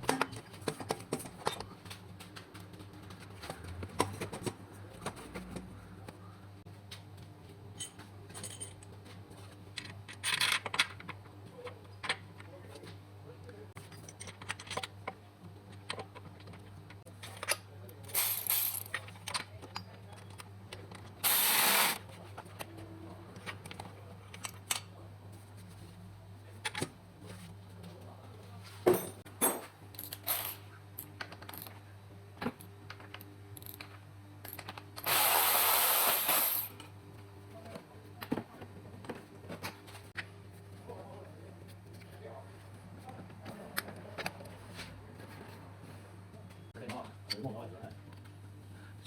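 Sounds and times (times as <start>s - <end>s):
hissing blasts of air: 21.2s - 22.0s.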